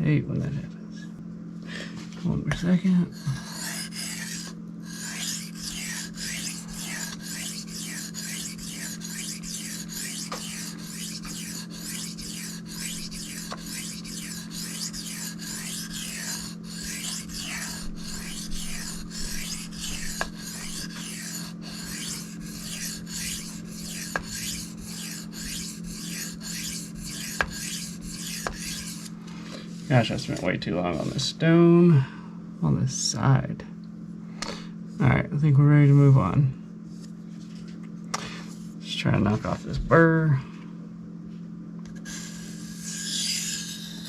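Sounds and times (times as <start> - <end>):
knife scraping on sharpening stone: 3.2 - 29.1, 42.0 - 44.0.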